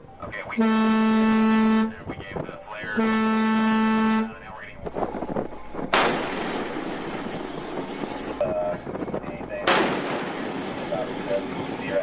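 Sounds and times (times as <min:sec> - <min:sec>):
naval gun booms: 0:05.8 - 0:07.8, 0:09.6 - 0:10.9.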